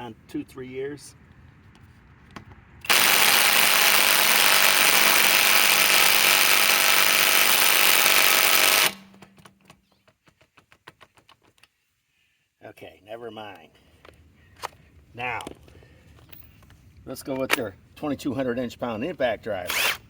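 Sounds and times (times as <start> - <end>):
impact wrench hammering: 2.9 - 9.4.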